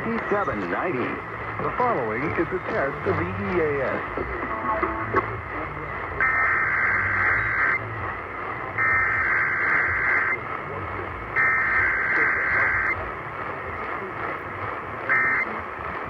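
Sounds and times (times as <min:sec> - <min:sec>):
warbling digital data tones: 0:15.1 - 0:15.5.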